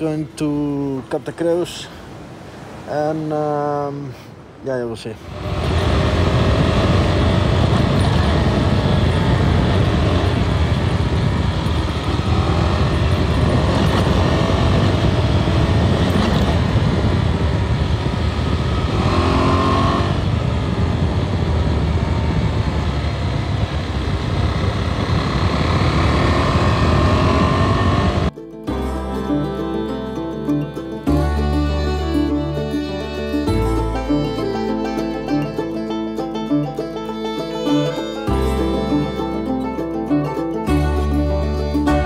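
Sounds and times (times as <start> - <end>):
wind rush: 5.2 - 28.3
motorcycle engine accelerating: 5.3 - 28.3.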